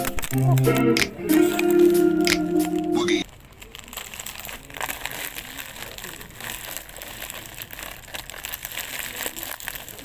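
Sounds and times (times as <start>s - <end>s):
packaging crinkling and rustling: 0.0s - 0.8s, 3.2s - 10.0s.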